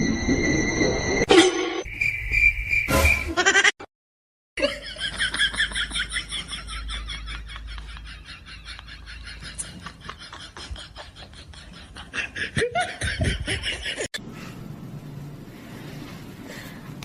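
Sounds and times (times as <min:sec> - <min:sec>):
person laughing: 0:03.3 - 0:03.8, 0:04.6 - 0:14.2.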